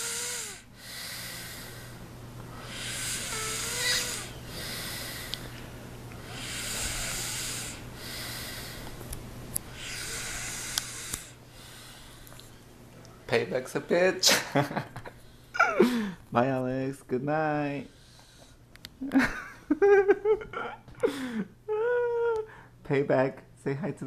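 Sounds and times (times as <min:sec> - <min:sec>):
man snoring: 0:00.0 - 0:02.0, 0:02.6 - 0:05.5, 0:06.2 - 0:08.8, 0:09.7 - 0:12.1.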